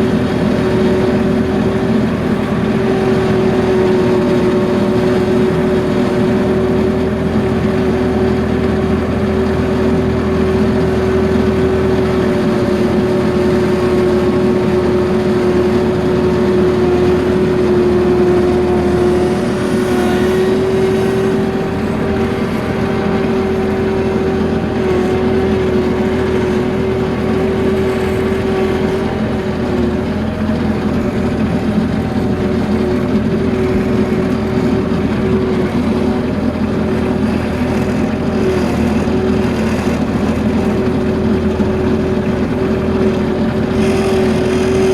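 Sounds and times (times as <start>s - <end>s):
motor running with steady hum: 0.0s - 44.9s.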